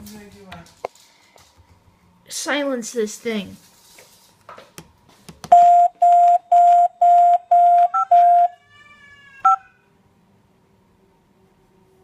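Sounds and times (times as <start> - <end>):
alarm keypad beeping: 5.5 - 8.5, 9.5 - 9.7.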